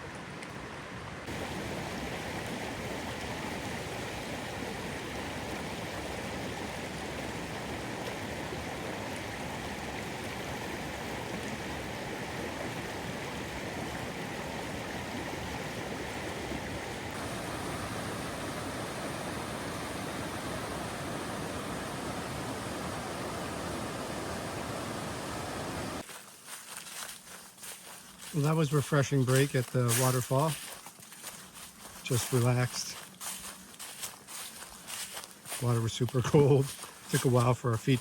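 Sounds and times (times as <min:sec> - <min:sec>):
stream rushing over waterfall: 0:00.0 - 0:38.0.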